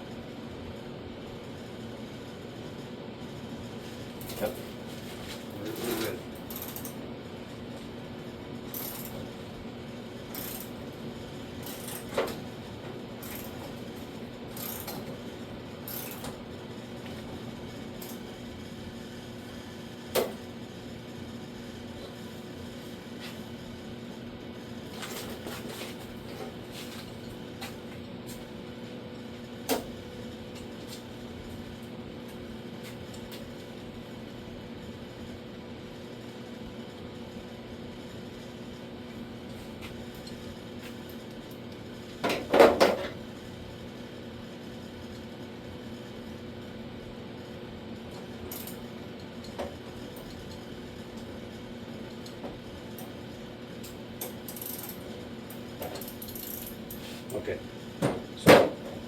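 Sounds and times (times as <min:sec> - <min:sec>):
steady hum: 0:00.0 - 0:59.0.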